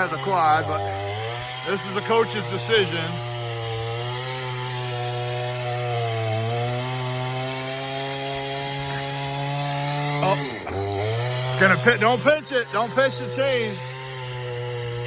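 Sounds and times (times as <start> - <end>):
chainsaw cutting wood: 0.0 - 15.0.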